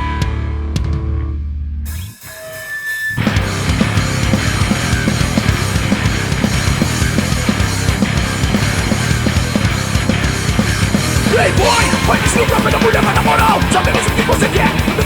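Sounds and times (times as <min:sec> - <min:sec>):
distorted guitars: 0:00.0 - 0:15.0
fast driving drums: 0:03.2 - 0:15.0.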